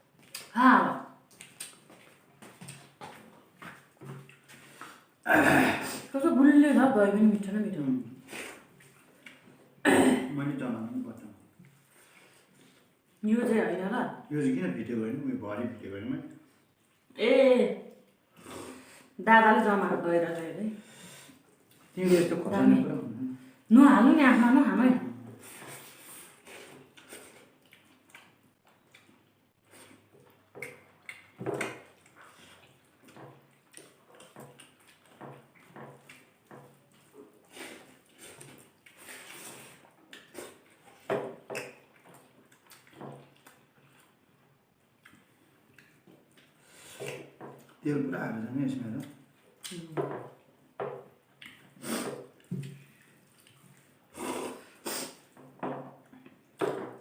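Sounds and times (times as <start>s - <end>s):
chewing and mouth smacks: 0.1s - 0.5s, 1.2s - 5.2s, 8.5s - 9.6s, 26.4s - 47.8s, 51.2s - 54.1s
sniffs: 8.2s - 8.8s, 18.4s - 19.2s, 20.8s - 21.4s, 25.4s - 27.5s, 37.5s - 40.6s, 46.6s - 47.3s, 51.7s - 52.3s, 54.1s - 55.3s
slurps: 25.4s - 30.4s, 31.0s - 44.2s, 45.8s - 47.4s, 51.4s - 55.4s.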